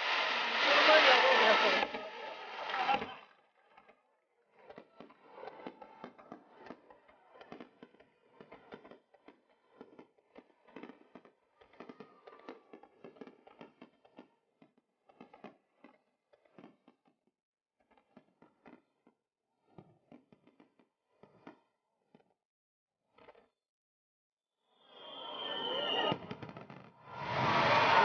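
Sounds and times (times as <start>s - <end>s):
faint fireworks crackling: 0.0s - 3.2s, 4.5s - 14.3s, 24.9s - 28.0s.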